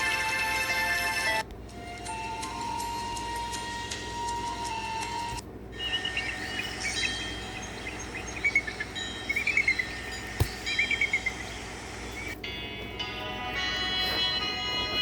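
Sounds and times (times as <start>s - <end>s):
faint steady bed: 0.0s - 15.0s
bird-like chirps ringtone: 5.7s - 12.4s.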